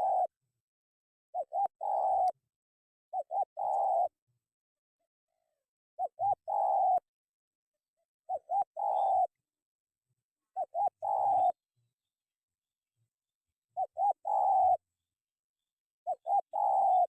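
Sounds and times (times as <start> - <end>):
dove cooing: 0.0 - 0.4, 1.4 - 2.4, 3.1 - 4.2, 6.0 - 7.1, 8.3 - 9.4, 10.6 - 11.6, 13.8 - 14.9, 16.1 - 17.0.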